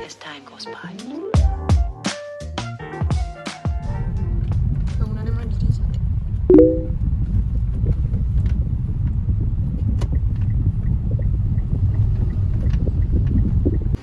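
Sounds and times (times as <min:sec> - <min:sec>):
car cabin rumble: 0:07.4 - 0:14.0.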